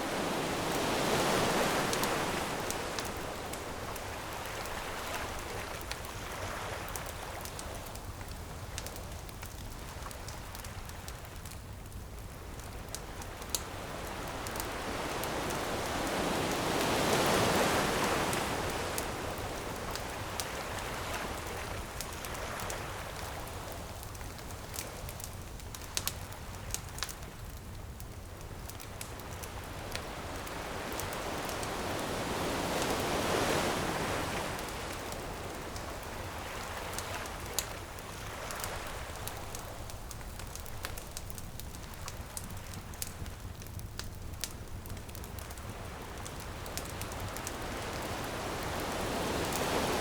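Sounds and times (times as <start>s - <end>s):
ocean waves breaking: 0.0s - 7.5s, 13.4s - 23.2s, 29.2s - 40.6s, 45.6s - 50.0s
bonfire crackling: 0.0s - 50.0s.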